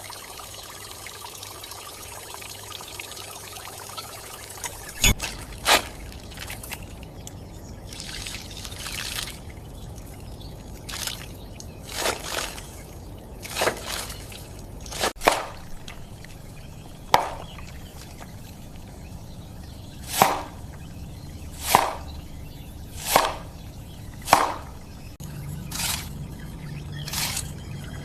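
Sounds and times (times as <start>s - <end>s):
low steady background noise: 0.0s - 28.0s
wet food-handling sounds: 4.7s - 25.0s.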